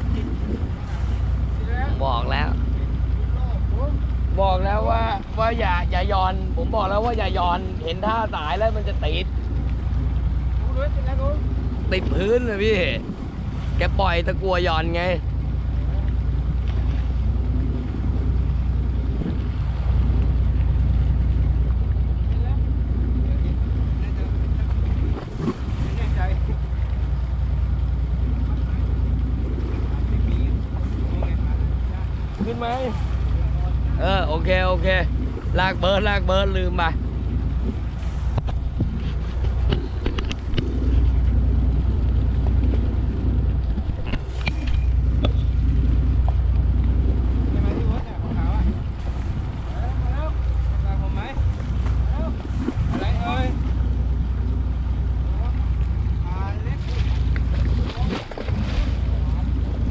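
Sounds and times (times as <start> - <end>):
boat engine droning: 0.0 - 59.9
sea noise: 0.0 - 59.9
wind: 0.0 - 59.9.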